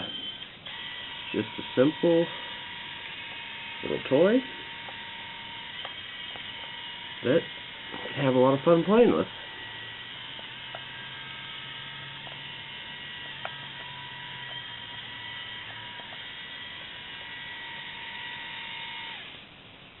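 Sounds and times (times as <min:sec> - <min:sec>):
servo motors whirring: 0:00.0 - 0:19.4.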